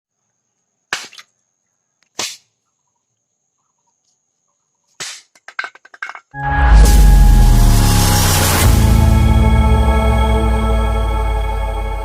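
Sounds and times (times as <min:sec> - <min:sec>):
loud music: 0:06.4 - 0:12.0.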